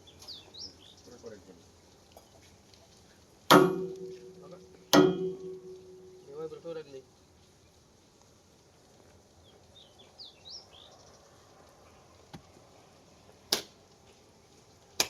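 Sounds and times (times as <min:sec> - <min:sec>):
loud sharp crack: 0:03.5 - 0:06.3, 0:13.5 - 0:13.8.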